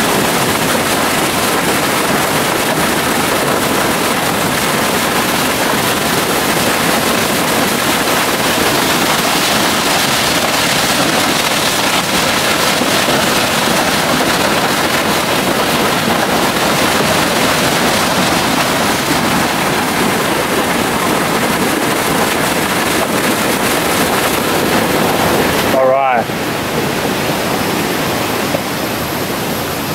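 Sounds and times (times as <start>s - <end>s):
waterfall rushing: 0.0s - 29.9s.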